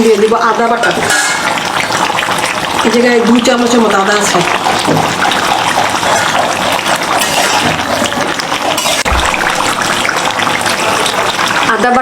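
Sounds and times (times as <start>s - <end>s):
gravy bubbling: 0.0s - 12.0s
low knock: 9.1s - 9.6s.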